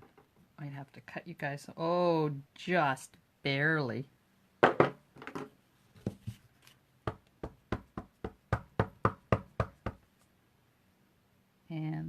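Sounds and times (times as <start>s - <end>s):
rubber stamp knocking on ink pad: 7.1s - 10.0s.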